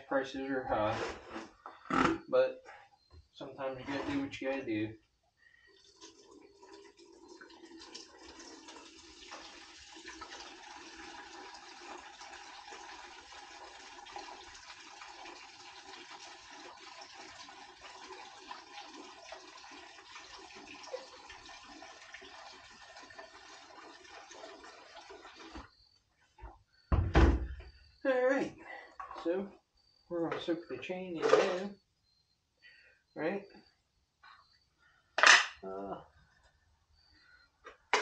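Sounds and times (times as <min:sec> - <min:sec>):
liquid pouring into container: 0:05.5 - 0:25.9.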